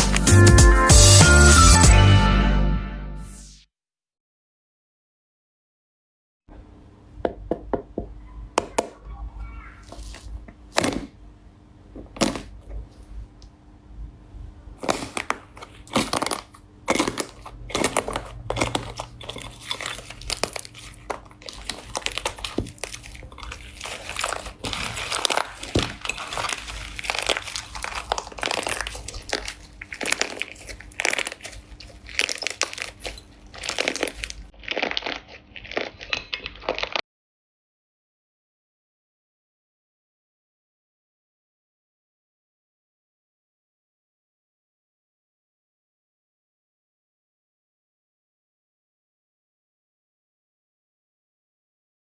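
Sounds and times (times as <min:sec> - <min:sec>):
slime squished by hand: 0:14.8 - 0:37.0.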